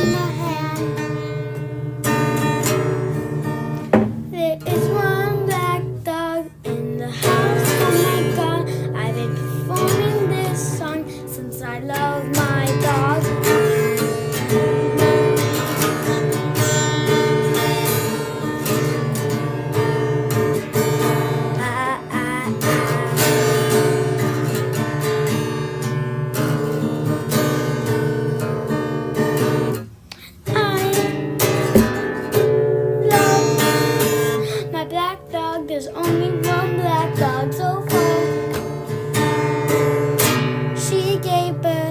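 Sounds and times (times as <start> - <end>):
person singing: 0.0 - 1.5, 4.3 - 14.1, 21.0 - 24.2, 30.3 - 31.6, 33.0 - 39.0, 40.6 - 41.9
strummed acoustic guitar: 0.0 - 41.9.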